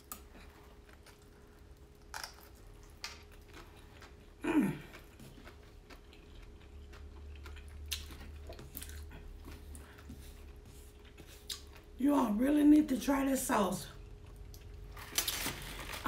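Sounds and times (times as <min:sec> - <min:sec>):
chewing food: 0:00.0 - 0:12.0.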